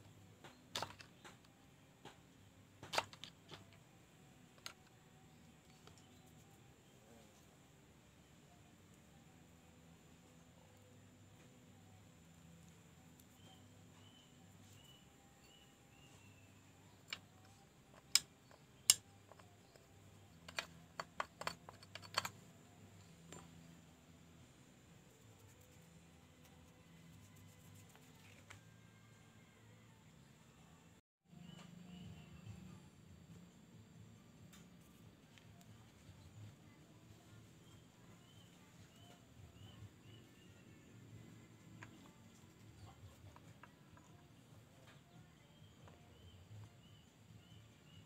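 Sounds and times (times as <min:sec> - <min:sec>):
small parts and tools clicking: 0:00.0 - 0:06.7, 0:11.3 - 0:24.2, 0:41.1 - 0:46.7
tools clicking and knocking: 0:00.4 - 0:03.8, 0:16.9 - 0:23.7.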